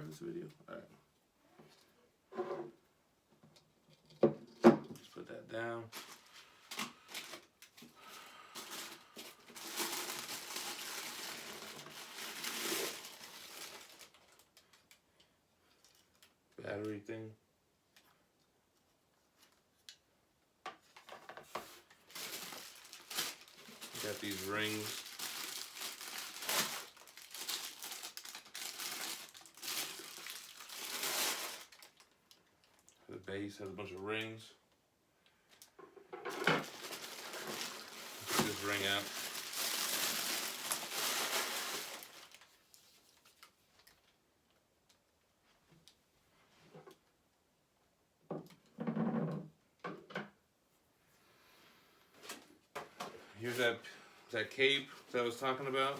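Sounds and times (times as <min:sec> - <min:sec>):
packaging crinkling and rustling: 0:05.9 - 0:15.0, 0:20.9 - 0:32.9, 0:36.3 - 0:44.2.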